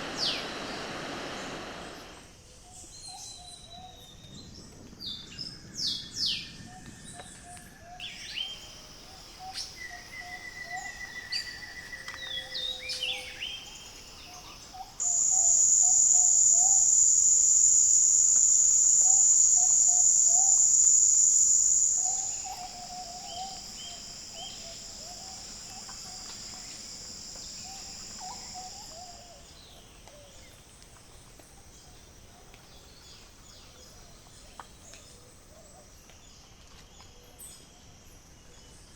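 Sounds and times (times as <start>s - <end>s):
quiet insect drone: 0.0s - 3.4s, 7.8s - 38.9s
loud high-pitched insect buzz: 15.0s - 29.1s
birds chirping and whistling: 15.0s - 29.2s.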